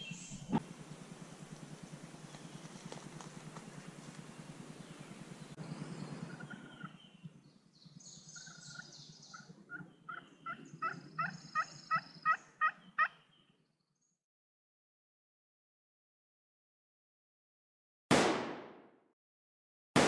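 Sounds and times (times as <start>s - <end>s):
turkey yelps: 6.3s - 7.0s, 8.4s - 13.2s.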